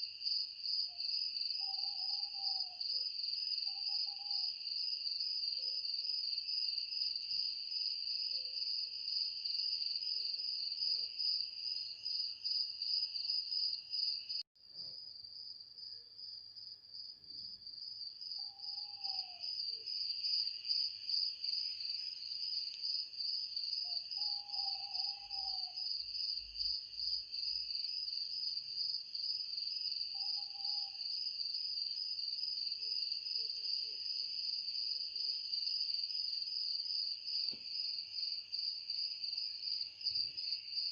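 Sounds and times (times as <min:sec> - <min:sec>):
shrill insect chorus: 0:01.0 - 0:04.7, 0:18.4 - 0:28.0, 0:29.5 - 0:31.6.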